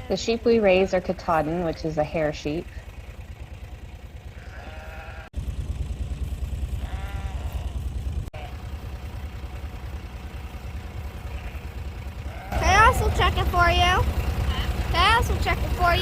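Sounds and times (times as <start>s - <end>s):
sheep bleating: 0.0s - 0.2s, 4.3s - 5.3s, 6.7s - 8.6s, 11.1s - 13.1s
vehicle engine idling: 0.0s - 16.0s.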